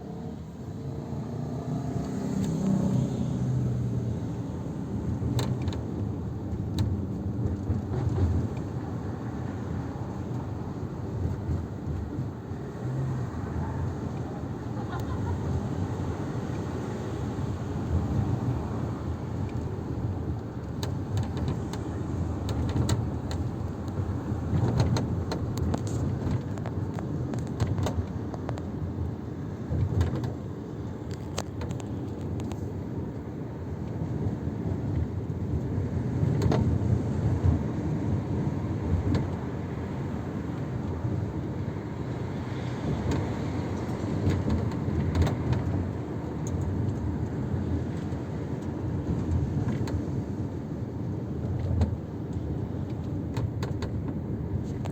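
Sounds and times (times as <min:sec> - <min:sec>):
car road and drivetrain rumble: 0:00.0 - 0:54.9
sunroof clicking and ticking: 0:19.4 - 0:28.9, 0:29.7 - 0:33.2.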